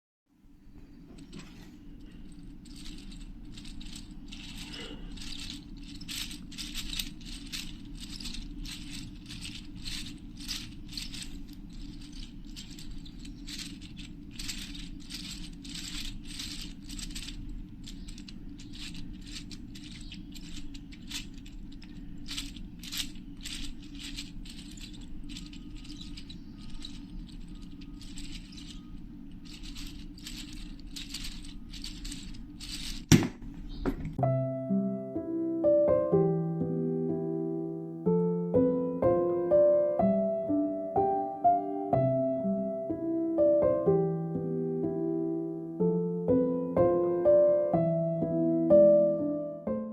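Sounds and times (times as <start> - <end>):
low hum: 0.4 - 35.5
plastic gears clicking and rattling: 1.2 - 34.2.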